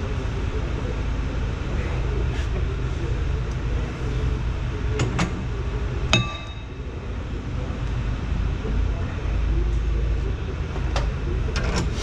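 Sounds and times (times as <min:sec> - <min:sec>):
steady low hum: 0:00.0 - 0:12.0
sharp metallic clang: 0:06.2 - 0:06.7.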